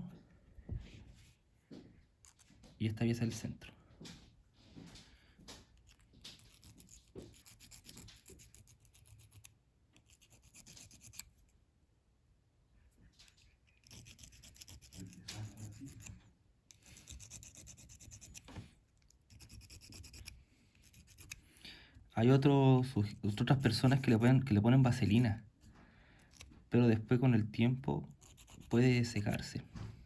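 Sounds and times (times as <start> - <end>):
small file rasping on plastic: 5.8 - 11.5, 13.2 - 21.6, 26.2 - 26.7, 28.0 - 29.5.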